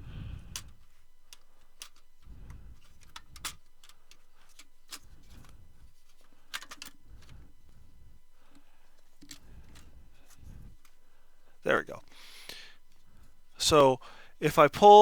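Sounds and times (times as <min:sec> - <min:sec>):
computer parts clicking: 0:00.5 - 0:07.4.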